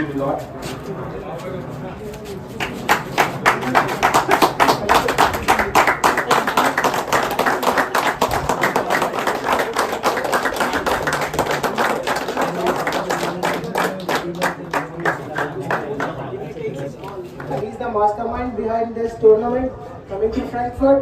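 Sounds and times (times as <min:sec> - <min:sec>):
voices: 0:00.0 - 0:21.0
crowd applauding: 0:02.6 - 0:17.6.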